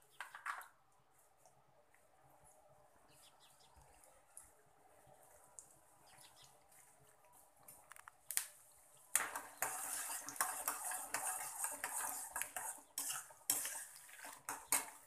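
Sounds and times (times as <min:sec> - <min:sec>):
food frying in hot oil: 0:09.1 - 0:15.0
spoon scraping and clinking in pot: 0:09.2 - 0:15.0.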